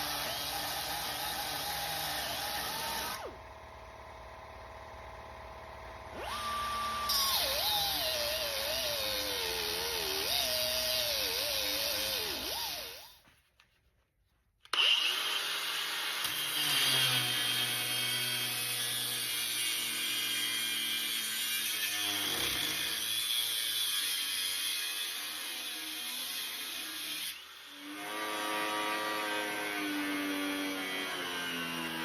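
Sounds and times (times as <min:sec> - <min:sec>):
electric power tool whining: 0:00.0 - 0:13.2, 0:14.7 - 0:19.9.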